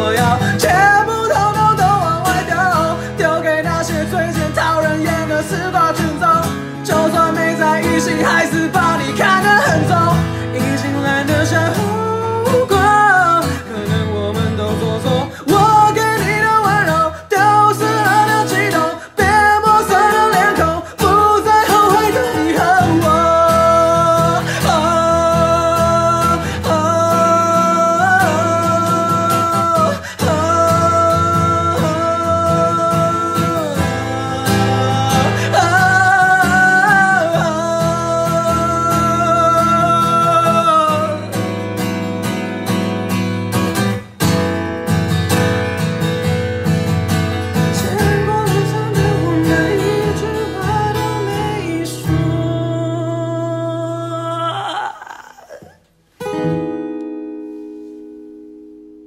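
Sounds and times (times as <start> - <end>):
wordless singing: 0.0 - 41.4, 47.7 - 55.8
strummed acoustic guitar: 0.0 - 59.0.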